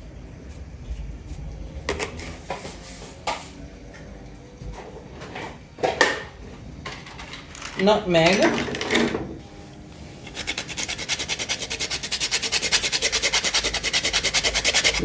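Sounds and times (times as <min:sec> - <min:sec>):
containers and utensils clattering: 0:04.7 - 0:09.4.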